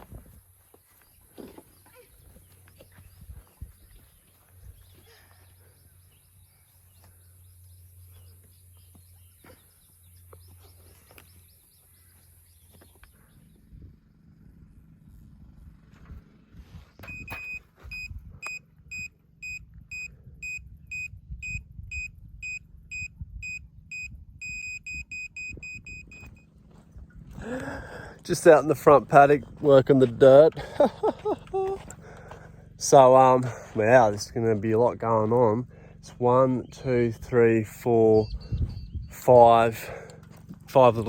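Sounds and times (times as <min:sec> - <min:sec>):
earth-working machine engine rumbling: 0:00.0 - 0:41.0
electronic warning beeper: 0:17.0 - 0:26.5.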